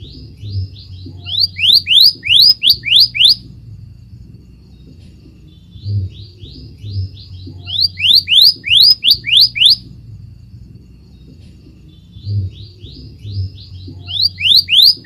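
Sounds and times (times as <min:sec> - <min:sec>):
bird singing rising whistles: 0:01.1 - 0:03.4, 0:06.8 - 0:09.8, 0:13.2 - 0:15.0
low thumps: 0:03.4 - 0:07.7.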